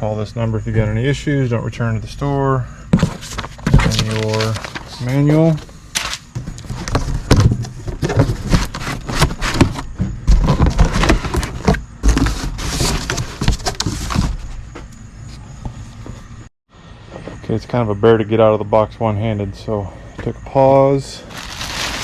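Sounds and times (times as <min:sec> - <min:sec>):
cardboard rustling and scraping: 0:02.9 - 0:16.3, 0:21.2 - 0:22.0.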